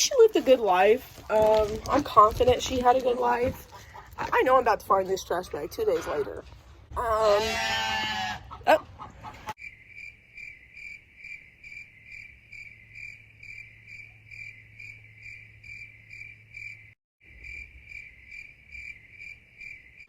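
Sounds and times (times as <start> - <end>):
crickets chirping: 9.6 - 20.0.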